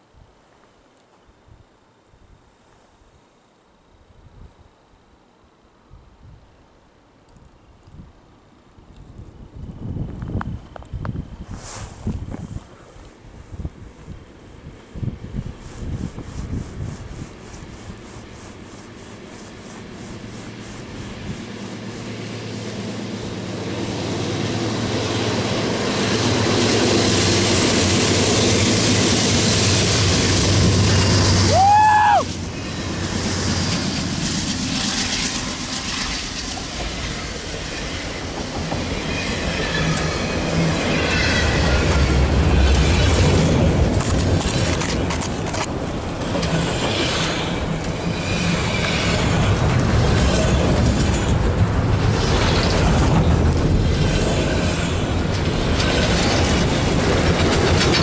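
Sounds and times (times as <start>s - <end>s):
wind and blowing snow: 5.9s - 58.0s
train wheels rumbling on rails: 9.0s - 58.0s
rising-and-falling whoop: 31.4s - 32.4s.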